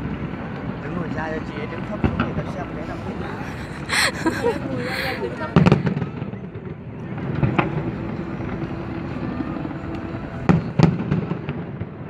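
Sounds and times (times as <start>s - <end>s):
crowd murmuring: 1.0s - 11.6s
fireworks bursting: 1.9s - 6.3s.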